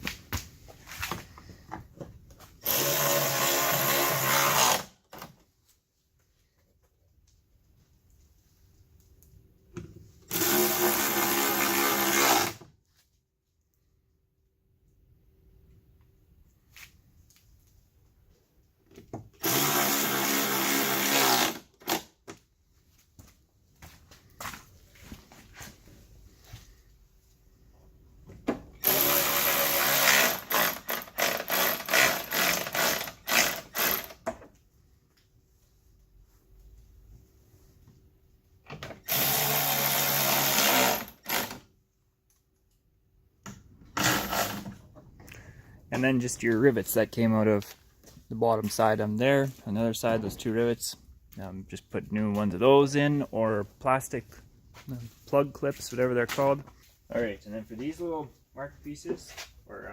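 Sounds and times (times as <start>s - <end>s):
cordless drill driving a screw: 2.6s - 4.9s, 10.3s - 12.6s, 19.4s - 22.1s, 28.8s - 34.2s, 39.0s - 41.6s, 44.0s - 44.7s.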